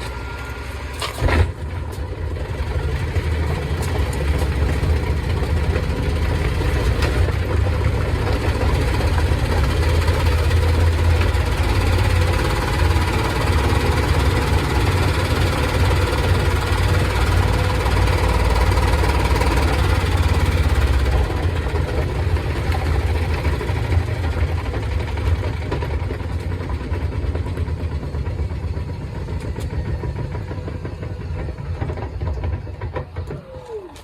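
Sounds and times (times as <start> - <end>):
short clatter: 0.0 - 2.2.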